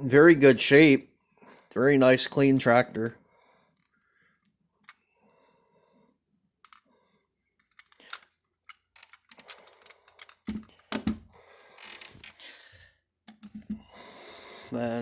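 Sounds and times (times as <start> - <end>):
toy tractors clicking and knocking: 7.6 - 12.5, 13.3 - 13.8.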